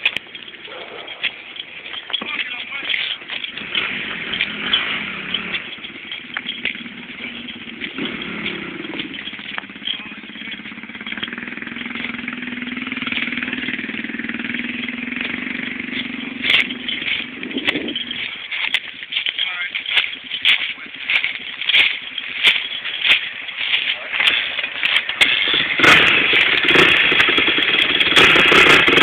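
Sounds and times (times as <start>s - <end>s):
low engine drone: 3.4s - 19.0s.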